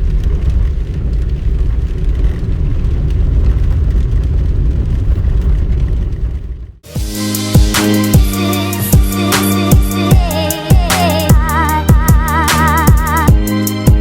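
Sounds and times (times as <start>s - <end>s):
car engine and tyres rumbling: 0.0s - 6.9s.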